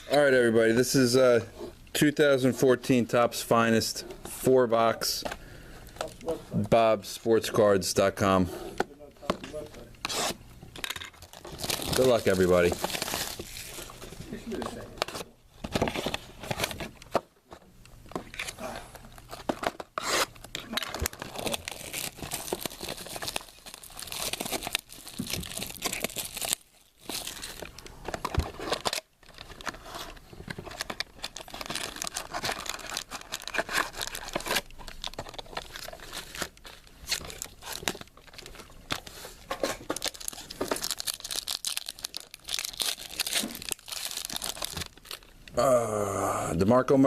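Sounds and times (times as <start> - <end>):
plastic wrapping crinkling and tearing: 11.2 - 17.1, 18.2 - 45.6.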